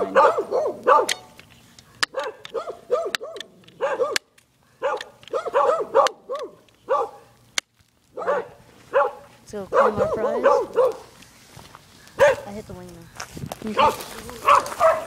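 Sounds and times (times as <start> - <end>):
dog barking: 0.0 - 1.3, 2.1 - 7.3, 8.2 - 11.1, 12.2 - 12.5, 13.8 - 15.0.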